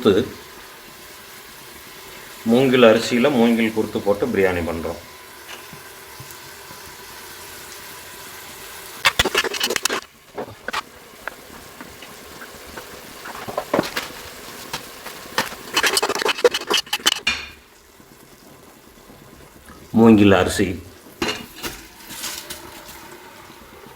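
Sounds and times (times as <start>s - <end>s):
food sizzling: 0.0s - 23.9s
spoon scraping cooking pot: 9.0s - 17.6s.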